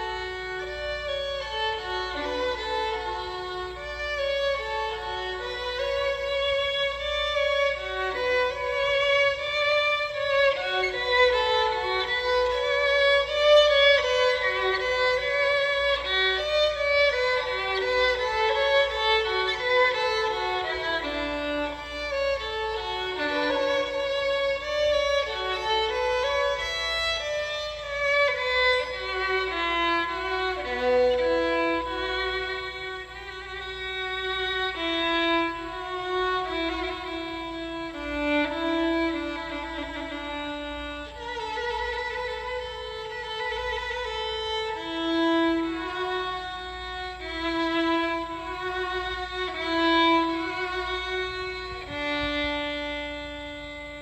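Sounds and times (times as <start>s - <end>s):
violin slow melody: 0.0s - 54.0s.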